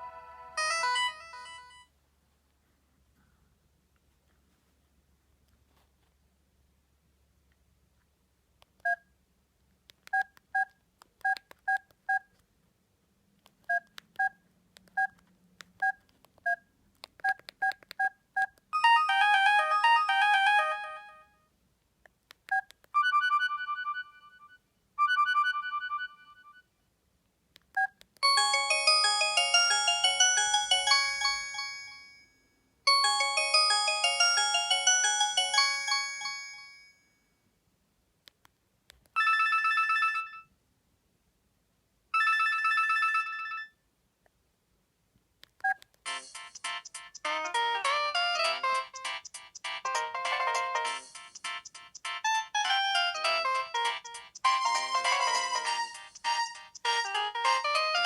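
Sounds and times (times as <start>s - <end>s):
electronic ringtone melodies: 0.0s - 1.9s, 18.8s - 21.2s, 23.0s - 26.6s, 28.2s - 32.2s, 32.9s - 36.9s, 46.0s - 58.0s.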